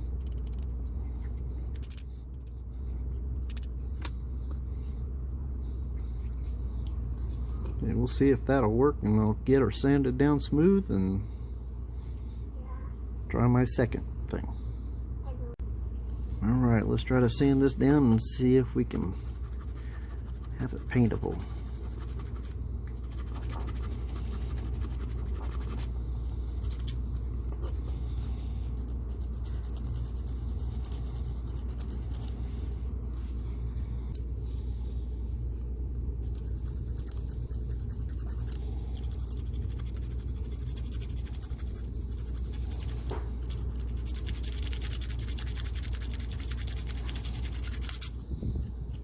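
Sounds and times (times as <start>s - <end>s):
low background hum: 0.0s - 49.0s
sanding metal: 19.0s - 25.9s, 36.2s - 48.1s.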